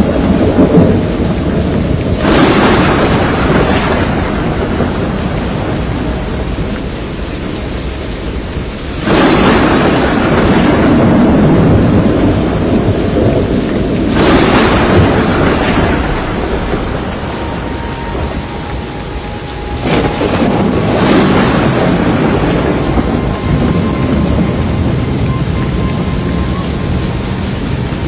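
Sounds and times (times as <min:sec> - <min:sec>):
heavy rain: 0:00.0 - 0:28.0
thunder cracking and rumbling: 0:00.0 - 0:28.0.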